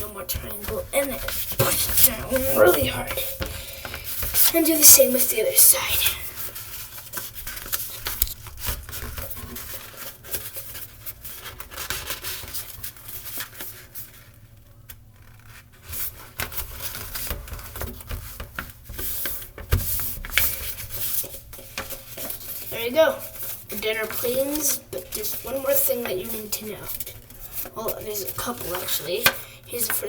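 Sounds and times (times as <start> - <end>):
paper being folded and creased: 6.4 - 29.4.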